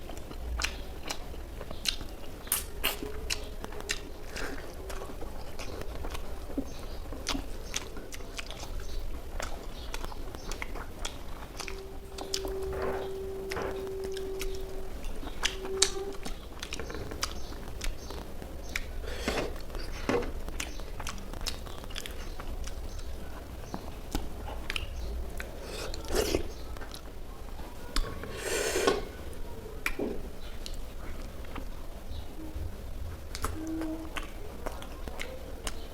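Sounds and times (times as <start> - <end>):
person chewing crunchy food: 0.0 - 27.2
mouth clicks: 0.1 - 27.1, 27.8 - 30.8, 33.3 - 35.9.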